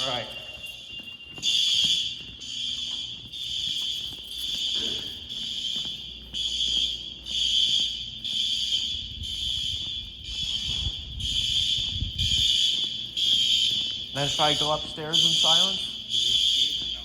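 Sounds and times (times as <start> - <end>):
fire alarm pulsing: 0.0 - 17.0.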